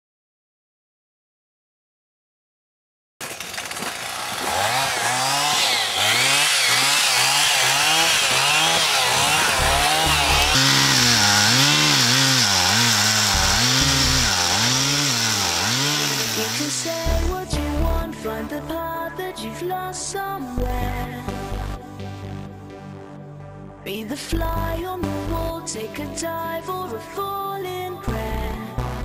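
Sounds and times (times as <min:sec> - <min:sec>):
chainsaw cutting wood: 0:03.2 - 0:18.0.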